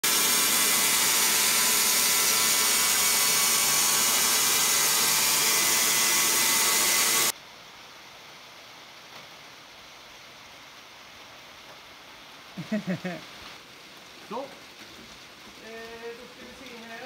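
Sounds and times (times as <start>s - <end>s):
band sawmill running: 0.0s - 7.3s.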